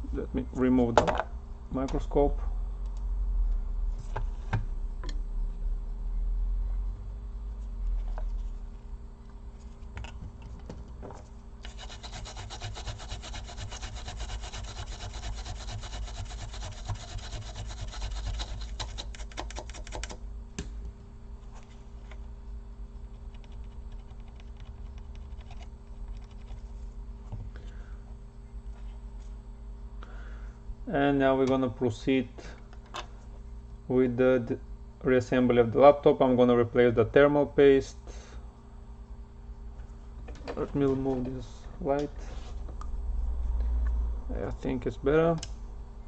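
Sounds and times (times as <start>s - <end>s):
low steady hum: 0.0s - 46.0s
rapid scrubbing: 11.7s - 20.0s.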